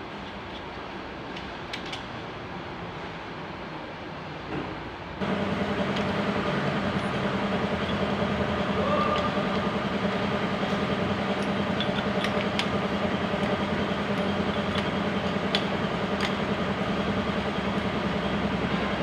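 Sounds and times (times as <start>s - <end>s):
engine running with clatter: 4.5s - 19.0s.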